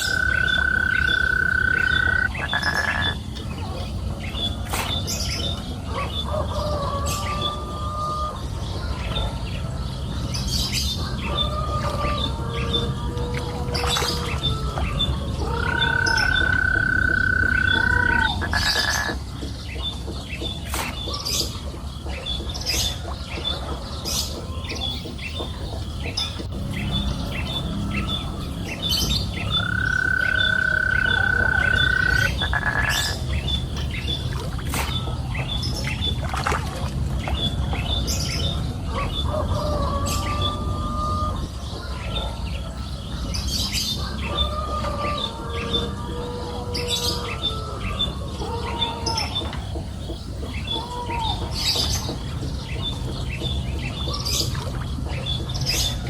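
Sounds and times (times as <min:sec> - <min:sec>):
low steady rumble: 0:00.0 - 0:48.4
birds chirping and calling: 0:00.0 - 0:56.0.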